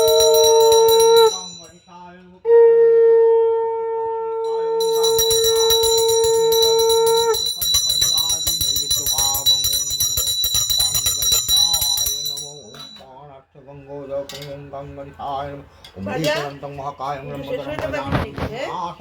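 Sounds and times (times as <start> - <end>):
conch shell blown: 0.0 - 1.6, 2.4 - 8.0
hand bell ringing rapidly: 0.0 - 1.9, 4.5 - 13.0
voices: 0.0 - 2.6.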